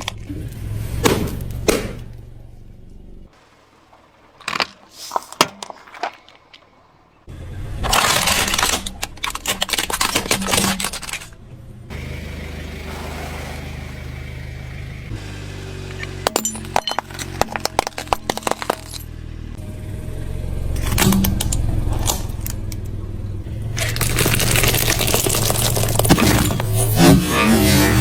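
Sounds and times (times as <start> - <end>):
car running with low hum: 0.0 - 3.3, 7.2 - 28.0
tyre crunching toys: 3.8 - 11.4, 15.8 - 19.4, 23.6 - 28.0.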